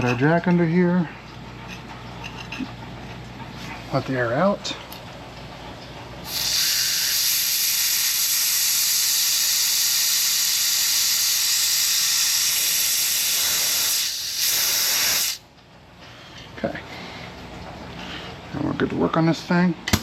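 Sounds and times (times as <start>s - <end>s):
compressed air hissing: 6.2s - 15.4s.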